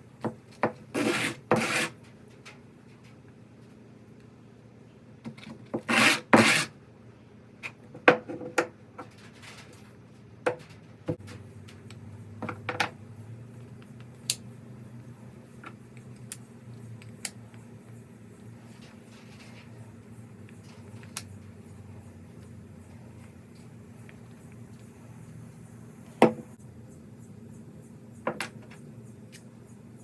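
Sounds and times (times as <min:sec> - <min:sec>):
steady low hum: 0:00.0 - 0:30.0
hand tool scraping wood: 0:00.6 - 0:02.0, 0:05.7 - 0:06.7.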